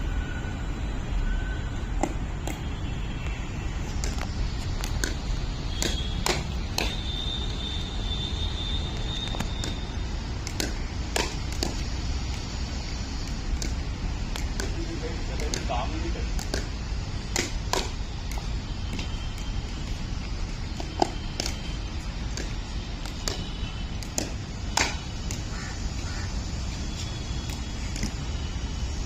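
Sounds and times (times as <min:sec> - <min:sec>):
paddles popping against ball: 0:03.9 - 0:07.0, 0:09.2 - 0:12.4, 0:13.2 - 0:25.5.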